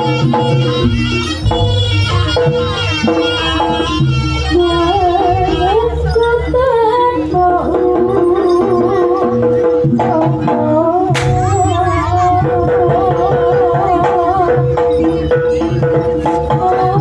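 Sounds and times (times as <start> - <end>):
wavering high melody: 0.0 - 16.8
hand drums and gongs playing: 0.0 - 17.0.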